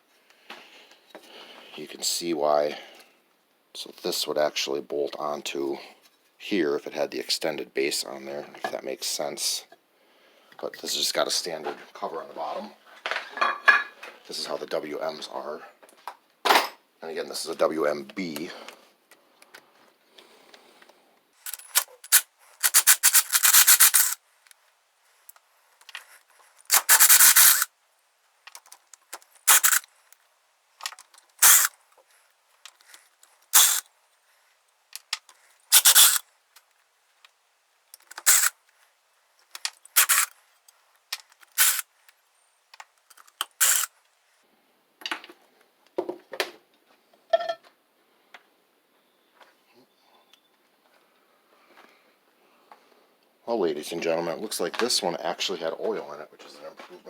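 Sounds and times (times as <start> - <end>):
ratchet wrench clicking: 21.5 - 24.2, 26.7 - 27.7, 28.6 - 29.9, 31.4 - 31.7, 32.8 - 33.8, 35.7 - 36.2, 38.0 - 38.6, 39.6 - 40.3, 41.2 - 41.8, 43.1 - 43.9.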